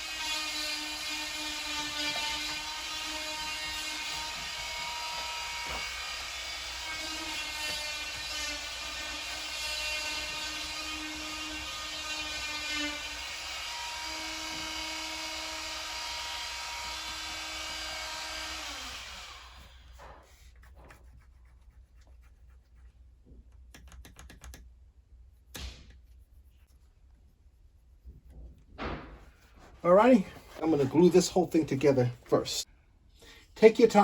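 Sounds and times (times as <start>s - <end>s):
knock: 28.8s - 29.3s.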